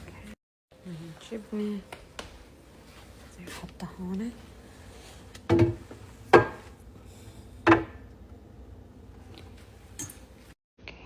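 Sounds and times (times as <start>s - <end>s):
containers set on fridge shelves: 4.9s - 10.6s.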